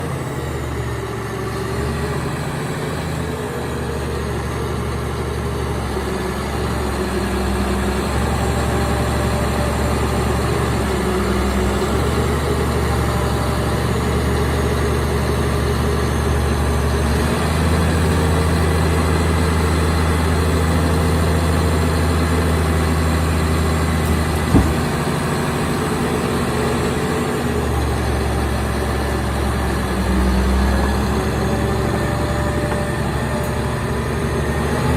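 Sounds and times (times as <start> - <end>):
bulldozer diesel engine idling: 0.0 - 34.9
sharp knock: 24.5 - 25.0.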